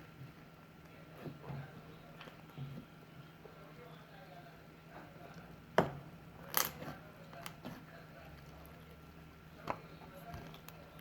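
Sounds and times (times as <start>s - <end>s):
hard objects knocking: 5.8s - 7.8s.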